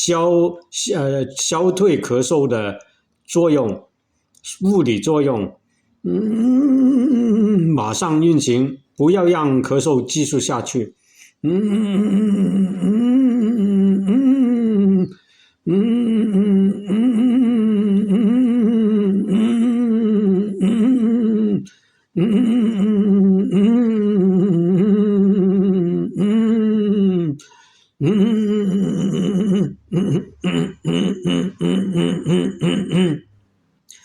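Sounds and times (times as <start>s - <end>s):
person humming long tones: 6.0s - 7.9s, 11.4s - 33.2s.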